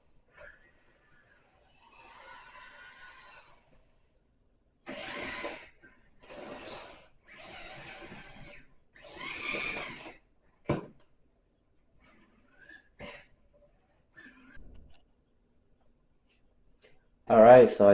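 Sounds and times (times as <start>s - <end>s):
hydraulic pump motor running: 4.8s - 10.1s.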